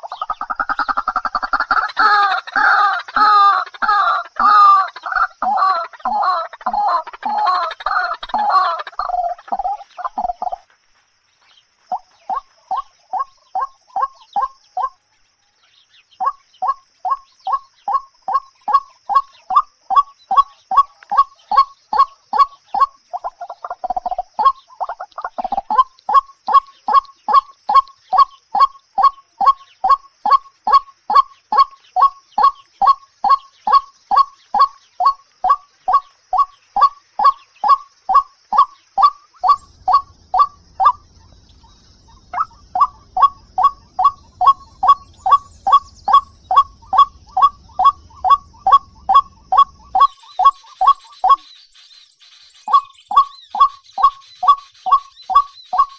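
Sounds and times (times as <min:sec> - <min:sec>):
bird repeating short call: 0:42.0 - 0:55.9.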